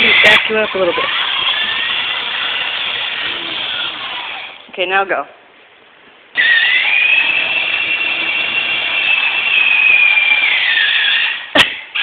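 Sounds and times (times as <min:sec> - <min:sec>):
atv engine revving: 0:06.4 - 0:11.2.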